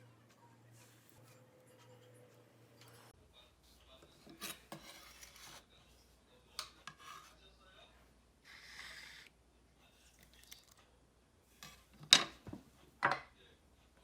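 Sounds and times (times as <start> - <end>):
kitchen utensils scraping and clicking: 0.6 - 3.2, 4.0 - 5.7, 6.6 - 7.4, 11.6 - 13.2.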